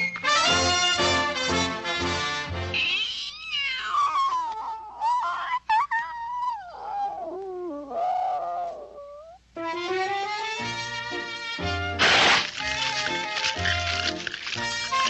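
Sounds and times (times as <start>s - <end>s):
cartoon orchestral music: 0.0s - 2.8s, 9.6s - 15.0s.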